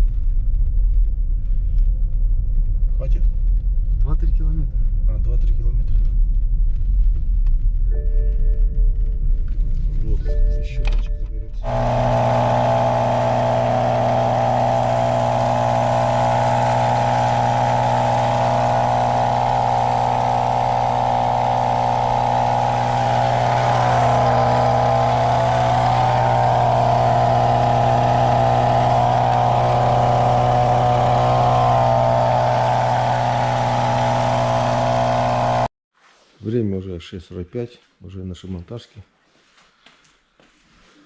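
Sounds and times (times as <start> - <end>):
car engine and road drone: 11.6 - 35.7.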